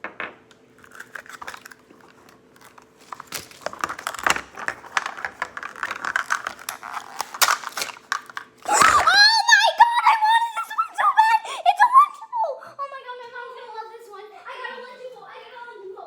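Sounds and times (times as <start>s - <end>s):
plastic packaging crinkling: 0.8s - 9.2s.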